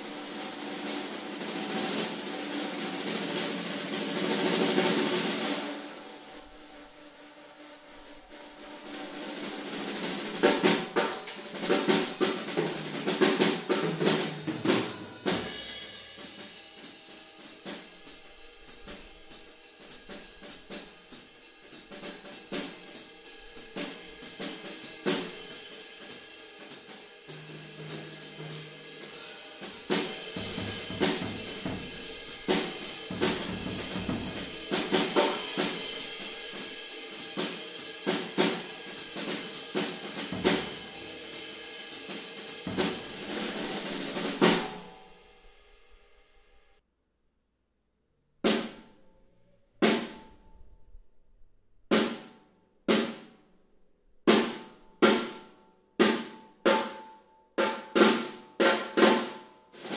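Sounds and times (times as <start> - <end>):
snare drum: 0.0 - 6.6, 8.3 - 45.0, 48.5 - 48.9, 49.8 - 50.2, 51.9 - 53.4, 54.3 - 59.9
cymbals: 0.0 - 46.2, 49.8 - 50.4, 54.3 - 59.9
hi-hat: 8.6 - 45.0
bass drum: 10.2 - 16.5, 27.3 - 37.0, 38.2 - 41.4, 42.6 - 44.9.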